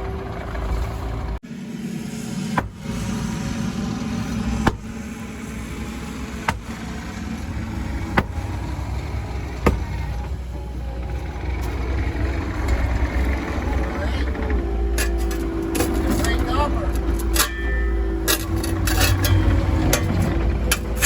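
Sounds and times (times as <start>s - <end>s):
heavy machine engine running: 0.0s - 21.0s
sharp knocks: 9.6s - 10.0s.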